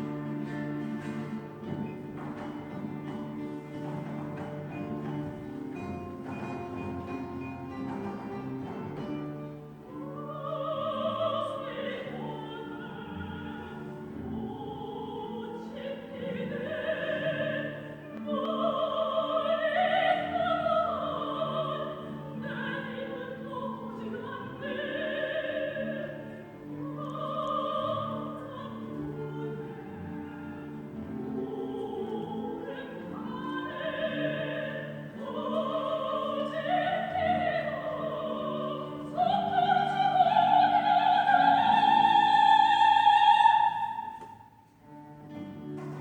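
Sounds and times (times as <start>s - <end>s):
guitar orchestra accompaniment: 0.0s - 46.0s
soprano singing with vibrato: 9.0s - 44.9s.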